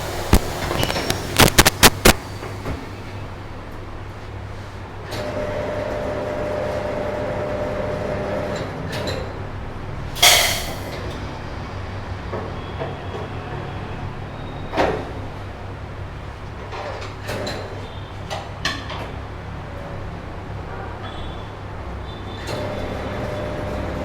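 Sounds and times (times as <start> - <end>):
compressed air hissing blasts: 0.0 - 2.6, 10.2 - 11.0.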